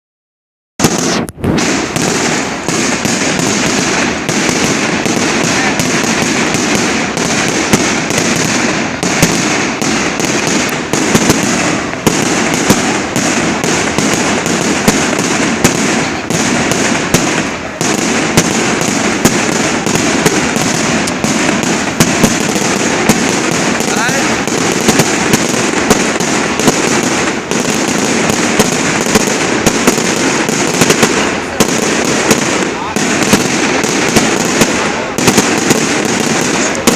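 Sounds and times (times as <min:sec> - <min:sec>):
fireworks bangs: 0:00.8 - 0:36.9
fireworks crackling: 0:00.8 - 0:36.9.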